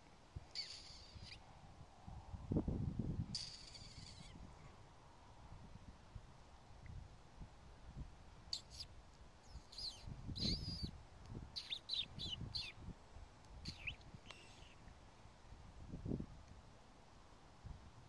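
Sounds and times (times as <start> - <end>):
wind rumble on microphone: 0.4 - 16.6, 17.6 - 18.0
high squeaky chirps: 0.6 - 1.4, 3.4 - 4.4, 8.5 - 8.8, 9.5 - 10.9, 11.6 - 12.7.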